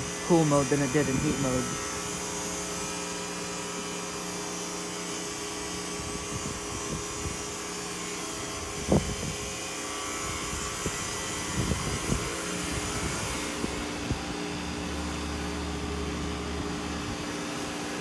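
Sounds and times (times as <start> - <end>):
heat pump humming: 0.0 - 18.0.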